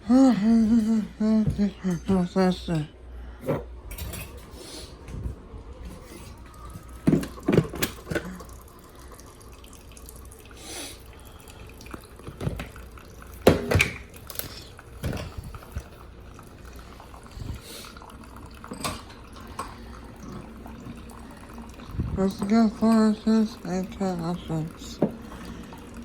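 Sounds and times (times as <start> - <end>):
coffee maker hum: 0.0 - 26.0
coffee dripping into mug: 6.6 - 26.0.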